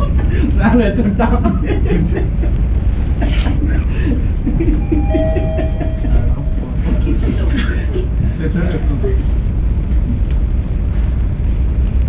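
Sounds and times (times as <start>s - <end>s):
low rumble: 2.2s - 12.0s
short electronic tone: 4.8s - 7.2s
muffled talk: 4.9s - 9.3s.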